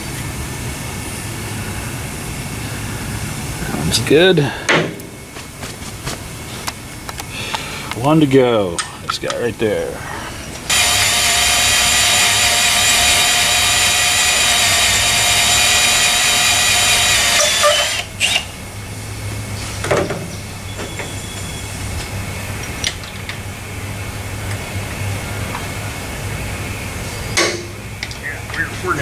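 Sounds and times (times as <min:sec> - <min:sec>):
power drill drilling into metal: 0:10.7 - 0:18.5.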